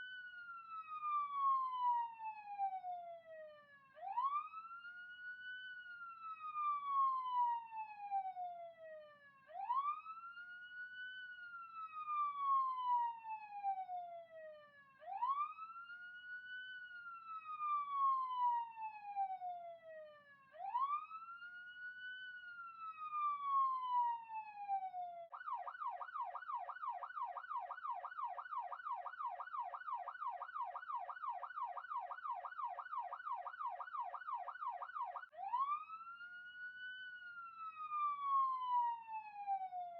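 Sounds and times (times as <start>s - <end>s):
police siren wailing and yelping: 20.6s - 39.9s.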